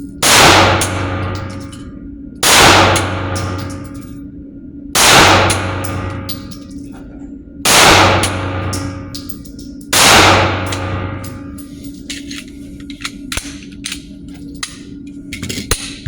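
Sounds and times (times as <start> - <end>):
pistol shots echoing: 0.2 - 1.6, 2.4 - 3.8, 5.0 - 6.4, 7.7 - 9.1, 9.9 - 11.4.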